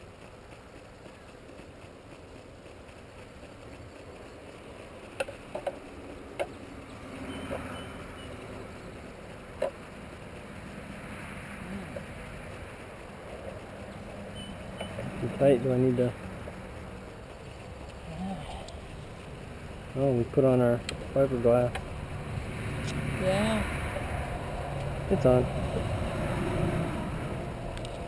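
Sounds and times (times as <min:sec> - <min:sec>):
low outdoor rumble: 0:00.0 - 0:28.0
sharp knocks and clicks: 0:05.1 - 0:10.0, 0:20.8 - 0:22.0.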